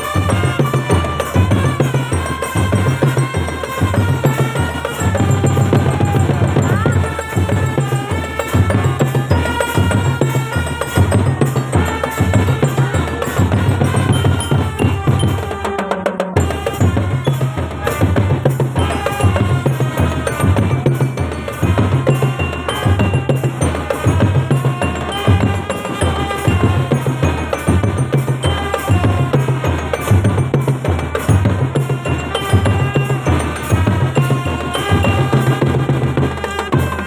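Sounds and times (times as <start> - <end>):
pitched melody: 0.0 - 37.0
bass drums beating: 3.8 - 15.6.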